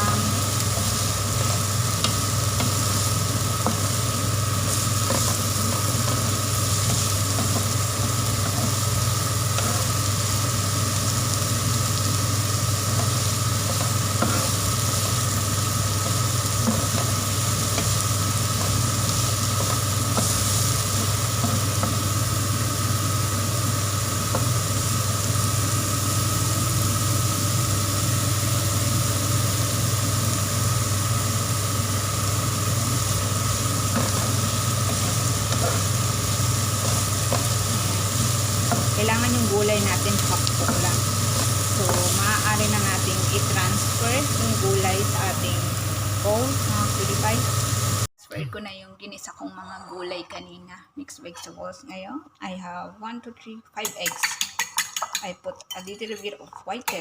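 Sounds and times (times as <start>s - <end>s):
vegetables sizzling in a pan: 0.0s - 48.1s, 53.8s - 57.0s
steady low hum: 0.0s - 48.5s
stirring utensil tapping: 53.8s - 56.3s.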